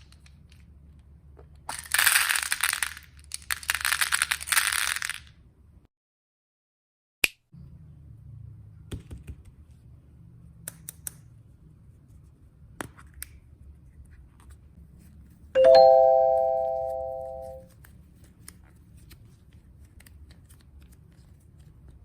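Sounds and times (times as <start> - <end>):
bell-like ding: 15.6 - 17.6.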